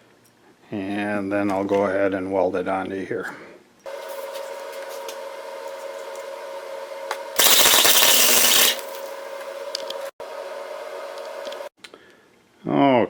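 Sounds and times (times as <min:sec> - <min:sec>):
steady hum: 0:03.9 - 0:11.7
welding arc crackling: 0:07.4 - 0:10.1.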